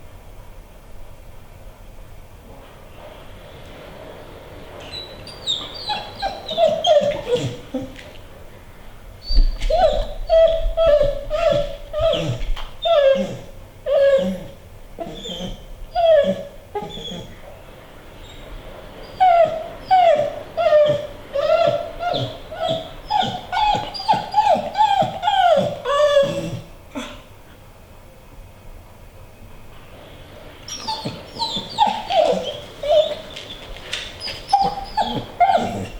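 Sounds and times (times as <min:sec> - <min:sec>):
dog whining: 0:04.8 - 0:08.2, 0:09.2 - 0:17.5, 0:18.2 - 0:27.3, 0:30.6 - 0:35.9.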